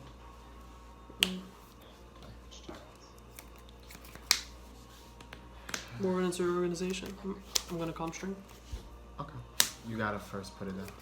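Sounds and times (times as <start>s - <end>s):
sharp snaps: 4.1s - 4.5s, 9.6s - 9.8s.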